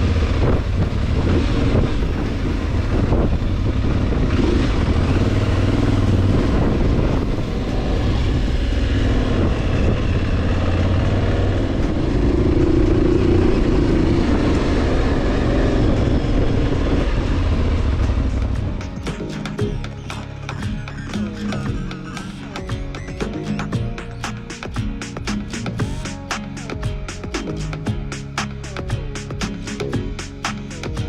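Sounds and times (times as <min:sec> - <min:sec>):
wind buffeting microphone: 0:00.0 - 0:19.0
motorcycle engine running: 0:00.0 - 0:31.0.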